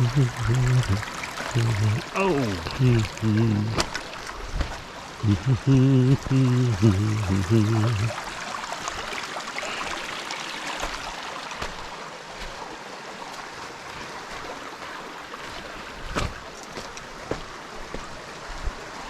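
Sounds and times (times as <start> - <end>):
creek water running over rocks: 0.0 - 19.0.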